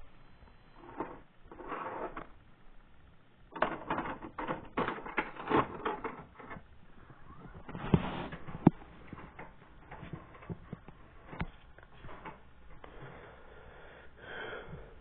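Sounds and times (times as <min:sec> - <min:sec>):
handling clicks and clatter: 0:03.5 - 0:12.9.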